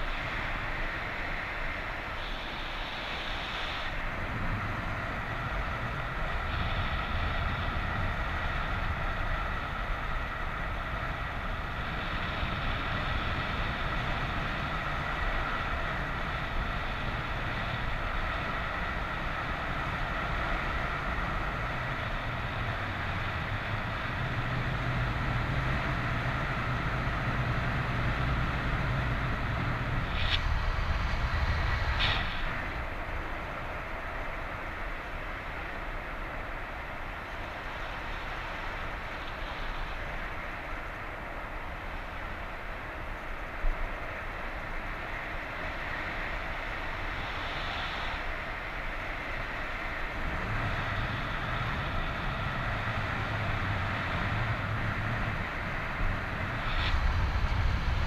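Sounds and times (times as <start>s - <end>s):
wind rushing over microphone: 0.0s - 58.0s
low rumble: 50.1s - 58.0s.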